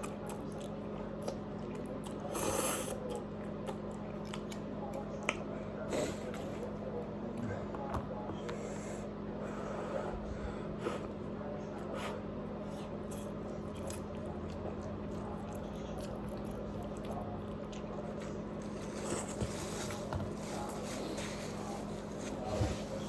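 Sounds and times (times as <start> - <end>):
chewing noodles: 0.0 - 6.7, 11.8 - 22.0
steady low hum: 0.0 - 23.0.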